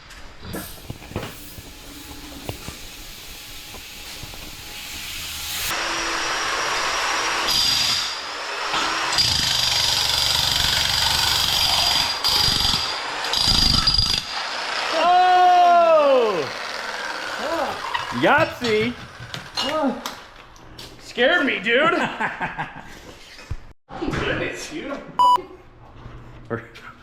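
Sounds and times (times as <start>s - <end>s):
power tool whining: 0.6s - 15.0s.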